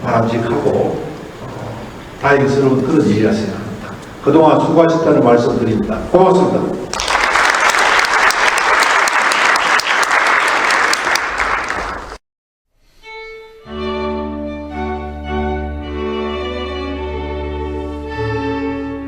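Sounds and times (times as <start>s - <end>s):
audience applauding: 6.9s - 12.2s
violin and cello music: 13.2s - 19.0s.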